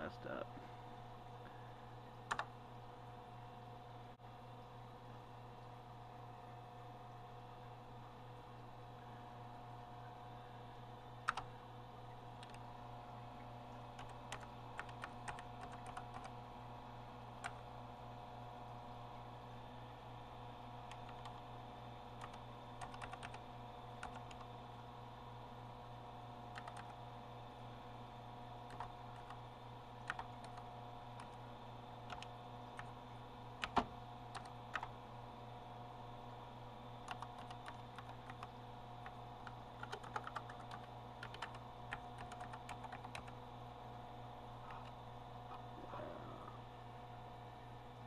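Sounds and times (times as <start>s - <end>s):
steady hum: 0.0s - 48.0s
keyboard keys being pressed: 39.8s - 41.6s.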